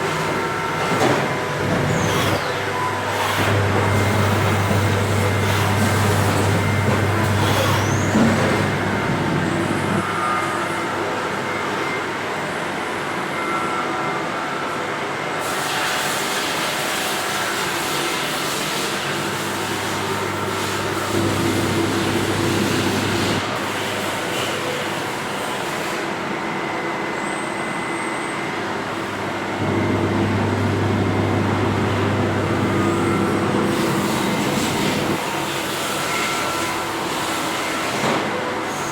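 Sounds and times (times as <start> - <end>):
machine hum: 0.0 - 10.1, 19.6 - 23.6, 29.0 - 35.4
low machine drone: 1.4 - 10.1, 20.9 - 23.4, 29.4 - 35.2
machine hissing: 18.4 - 24.1, 29.6 - 37.5.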